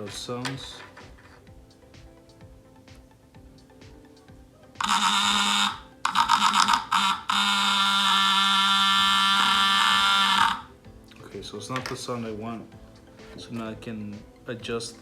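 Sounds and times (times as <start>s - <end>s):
vibration motor harsh buzz: 4.8s - 10.7s.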